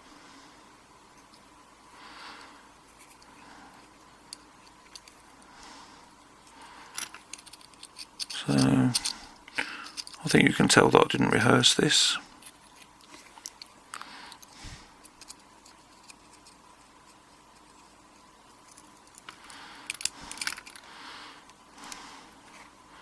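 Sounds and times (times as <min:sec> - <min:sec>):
metal lock parts clicking and scraping: 0:06.9 - 0:09.2, 0:09.8 - 0:10.2, 0:18.7 - 0:20.8.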